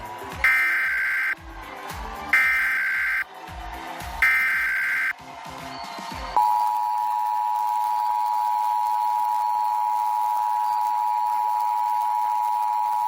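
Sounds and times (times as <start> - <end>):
two-tone alert signal: 0.4 - 1.4, 2.4 - 3.2, 4.2 - 5.1.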